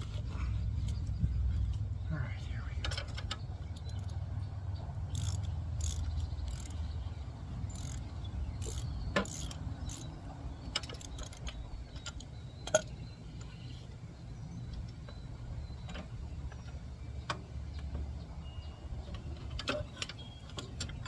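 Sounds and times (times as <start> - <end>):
steady low hum: 0.0 - 19.6
socket ratchet clicking: 5.1 - 7.0, 7.6 - 12.9.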